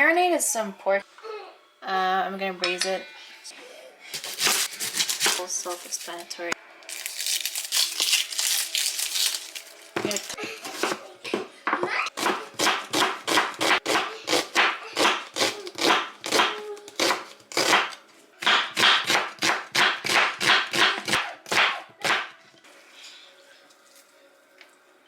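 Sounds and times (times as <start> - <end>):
knife chopping on cutting board: 12.2 - 22.3.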